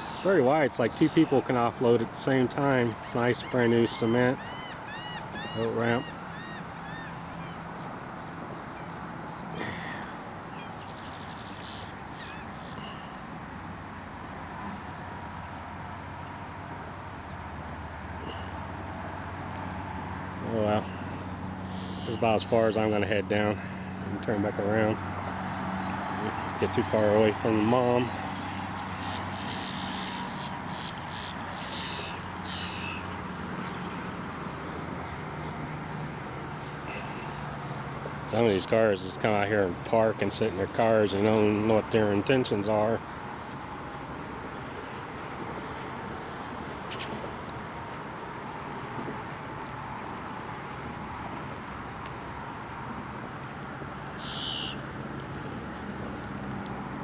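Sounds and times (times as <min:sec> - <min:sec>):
birds calling harshly: 0:00.0 - 0:13.2, 0:20.8 - 0:22.8, 0:25.6 - 0:43.0, 0:53.9 - 0:54.9
high-pitched bird call: 0:21.7 - 0:22.2, 0:29.0 - 0:33.0, 0:54.2 - 0:54.8.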